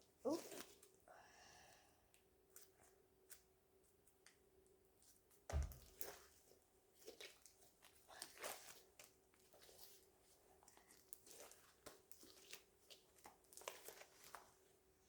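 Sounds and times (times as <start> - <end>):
thump: 5.5 - 5.9
slime squelching and popping: 10.8 - 14.2.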